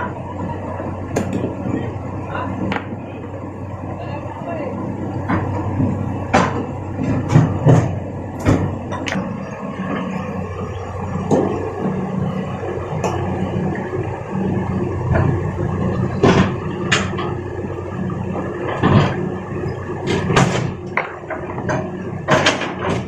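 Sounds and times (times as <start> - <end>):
excavator diesel engine: 0.0 - 23.0.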